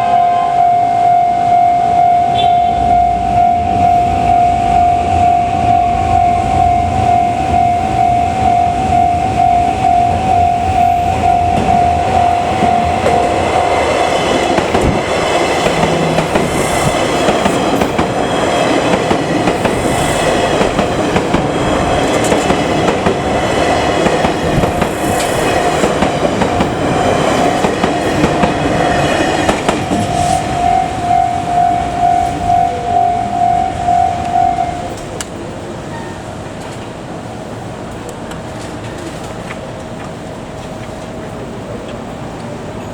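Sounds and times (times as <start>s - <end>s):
level crossing warning bell: 0.0s - 24.8s, 25.4s - 35.2s
train wheels clattering over rail joints: 12.6s - 30.6s.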